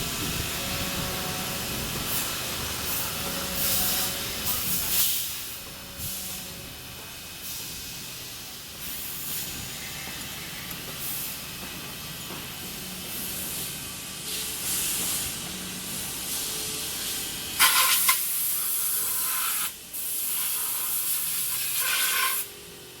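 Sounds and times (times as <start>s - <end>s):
low machine hum: 0.0s - 8.8s.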